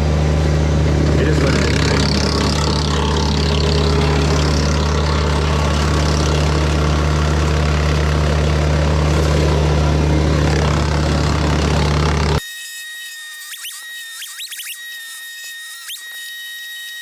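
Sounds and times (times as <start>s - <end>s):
tractor diesel engine running: 0.0s - 12.4s
wood chipper rushing noise: 0.0s - 12.4s.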